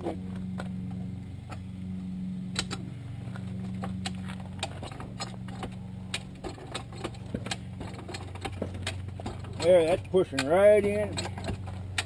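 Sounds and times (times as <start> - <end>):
low engine hum: 0.0 - 12.0
metal jack clicking and knocking: 4.0 - 12.0.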